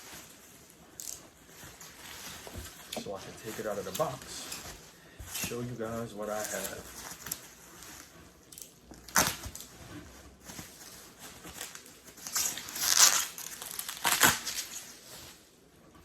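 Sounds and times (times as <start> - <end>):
bubble wrap crackles: 0.0 - 15.7
bubble wrap crinkling: 0.0 - 16.0.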